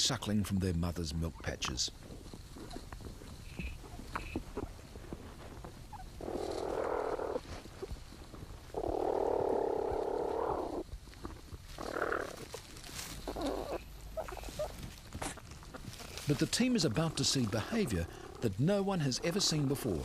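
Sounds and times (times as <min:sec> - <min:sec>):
platypus young rasping: 0:01.3 - 0:20.0.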